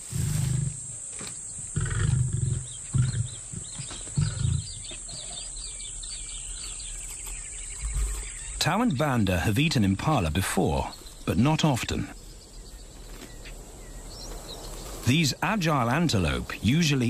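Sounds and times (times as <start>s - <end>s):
high insect hiss: 0.0s - 8.9s, 9.7s - 17.0s
lion giving deep calls: 1.7s - 4.8s.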